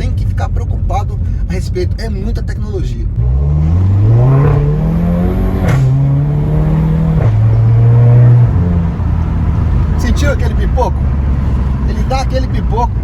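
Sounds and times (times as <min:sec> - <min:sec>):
exhaust pops: 0:03.2 - 0:12.8
car engine accelerating hard: 0:03.2 - 0:13.0.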